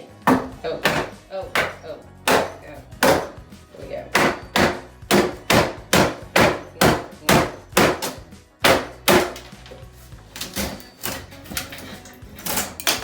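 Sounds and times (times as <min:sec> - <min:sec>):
hammer blows on cabinet: 0:00.2 - 0:03.5, 0:04.1 - 0:09.4.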